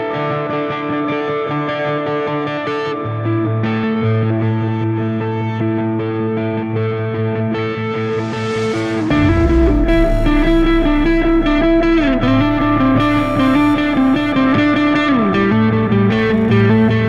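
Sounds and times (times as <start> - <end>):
distorted electric guitar: 0.0 - 17.0
steady bass: 7.7 - 17.0.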